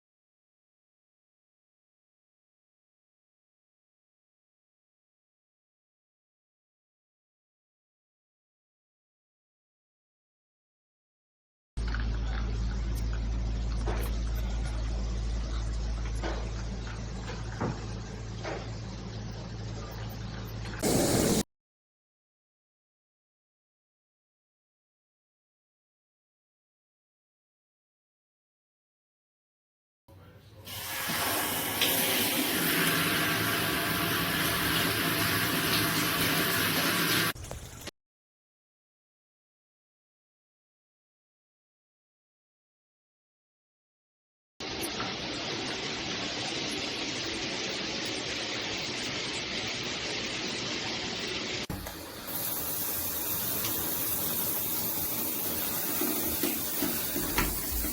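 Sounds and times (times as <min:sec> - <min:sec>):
shower water spraying: 0:20.8 - 0:21.5, 0:30.7 - 0:37.9, 0:44.6 - 0:57.9.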